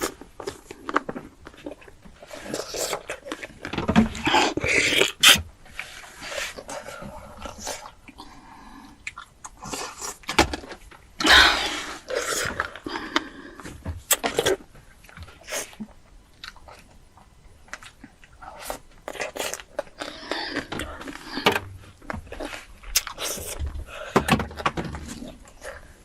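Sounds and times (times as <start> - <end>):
breathy burst: 11.2 - 13.6.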